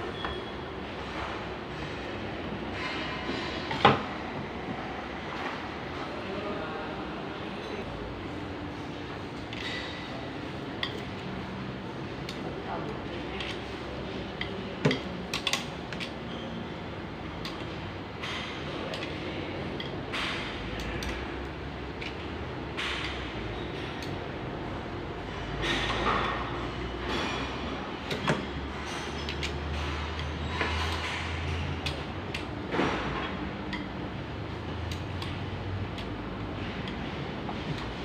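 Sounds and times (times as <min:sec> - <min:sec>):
steady low hum: 0:00.0 - 0:38.0
metal tools clanking and scraping: 0:02.7 - 0:03.9, 0:09.4 - 0:10.2, 0:25.2 - 0:32.0.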